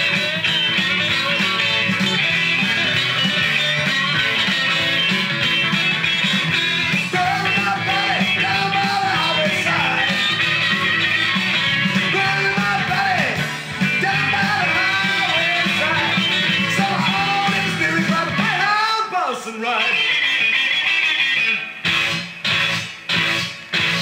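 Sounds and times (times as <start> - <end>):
bass and drums: 0.0 - 19.1, 19.9 - 24.0
electric guitar: 0.0 - 24.0
person singing: 6.9 - 10.4, 11.9 - 20.2.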